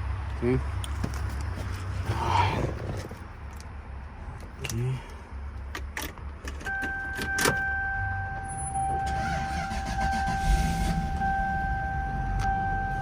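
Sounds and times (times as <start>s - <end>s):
car engine rumble: 0.0s - 13.0s
electronic warning tone: 7.6s - 13.0s.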